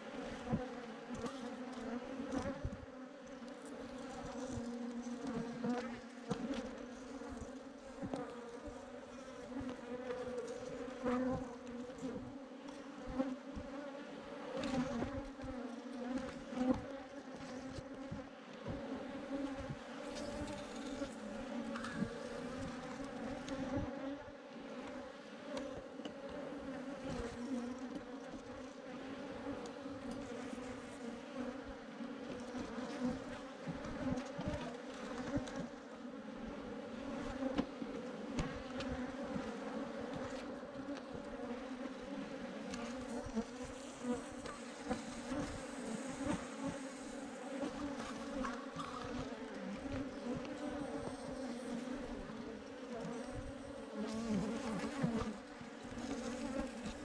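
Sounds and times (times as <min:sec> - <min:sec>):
bees buzzing: 0:18.7 - 0:24.2.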